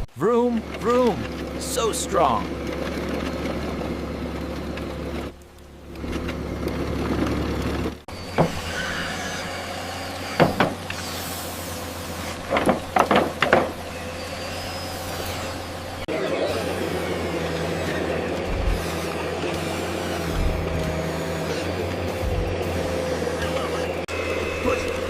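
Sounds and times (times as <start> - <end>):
heavy machinery engines running: 0.0 - 25.0
short sharp squeals: 8.1 - 12.5, 13.8 - 16.0.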